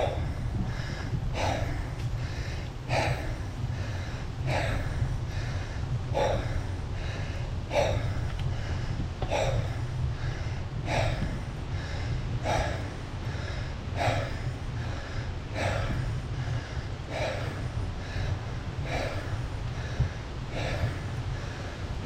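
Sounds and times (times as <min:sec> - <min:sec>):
heavy hoarse gasping breaths: 0:00.0 - 0:22.0
steady low rumble: 0:00.0 - 0:22.0.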